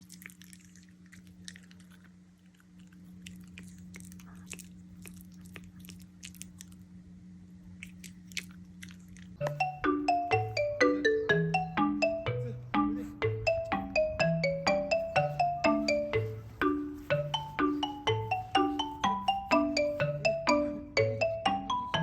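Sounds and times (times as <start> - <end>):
dog chewing and crunching: 0.0 - 9.6
steady low hum: 0.0 - 22.0
marimba-like melody: 9.4 - 22.0.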